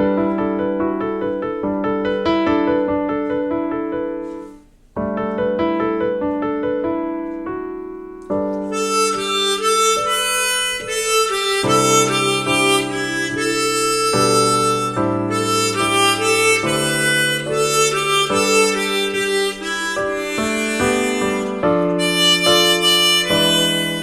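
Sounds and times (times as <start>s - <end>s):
gentle keyboard accompaniment: 0.0s - 24.0s
harmonica melody: 8.3s - 24.0s.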